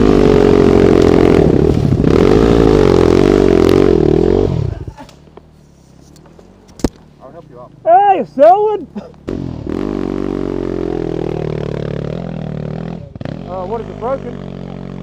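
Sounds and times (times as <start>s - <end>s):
dirt bike engine revving: 0.0s - 5.0s, 9.2s - 15.0s.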